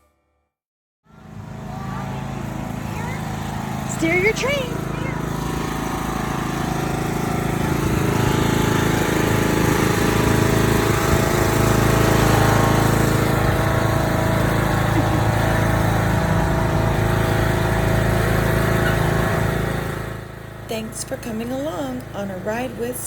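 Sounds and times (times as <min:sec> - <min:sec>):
small petrol engine droning: 0:01.1 - 0:23.0.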